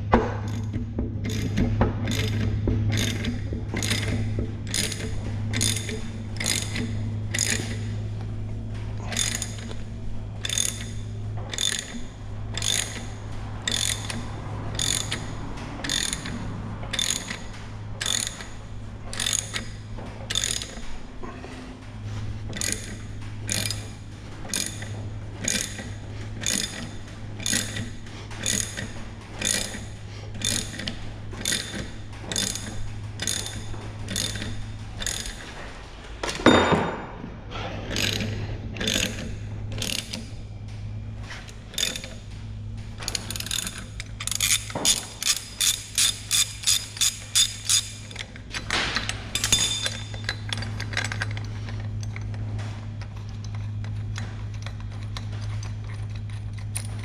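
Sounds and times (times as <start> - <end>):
steady low hum: 0.0 - 57.0
ratchet wrench clicking: 0.4 - 7.9, 9.1 - 20.9, 22.5 - 35.6, 37.9 - 40.3, 41.5 - 42.2, 43.0 - 52.4.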